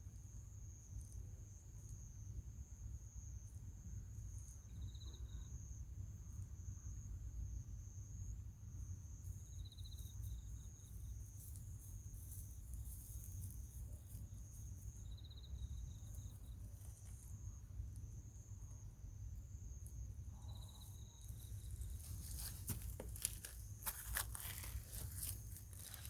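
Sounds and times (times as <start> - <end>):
insect high-pitched trill: 2.8 - 7.2, 8.0 - 26.0
insect pulsed chirps: 9.3 - 22.4.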